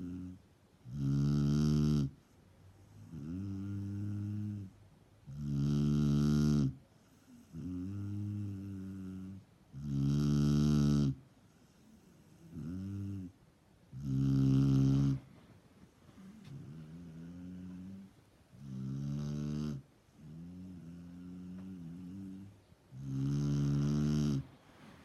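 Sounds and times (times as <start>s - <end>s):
person snoring: 23.0s - 24.5s.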